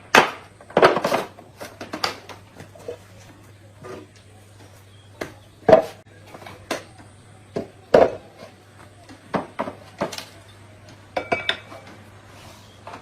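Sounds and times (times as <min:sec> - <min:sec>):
hard objects knocking and clinking: 0:09.3 - 0:12.0.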